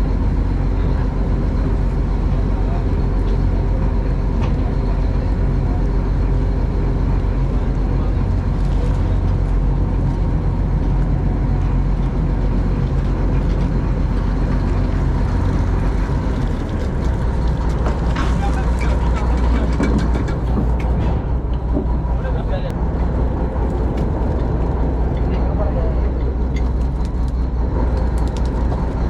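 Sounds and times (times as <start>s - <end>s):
boat engine droning: 0.0s - 29.0s.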